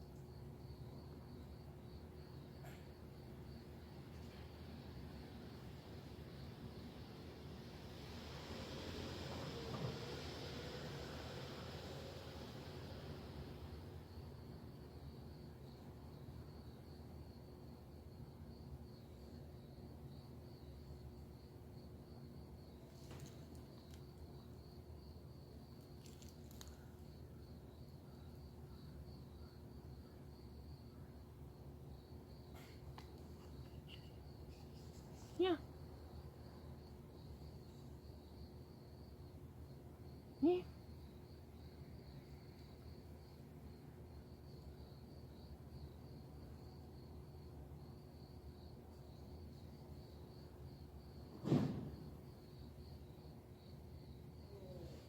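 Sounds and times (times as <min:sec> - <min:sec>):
insect chirping: 0:00.0 - 0:55.0
low background hum: 0:10.8 - 0:51.3
sudden thump: 0:51.3 - 0:52.0.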